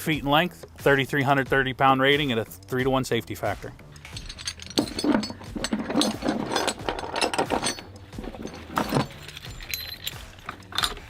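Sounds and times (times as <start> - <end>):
metallic clattering: 3.9 - 11.0.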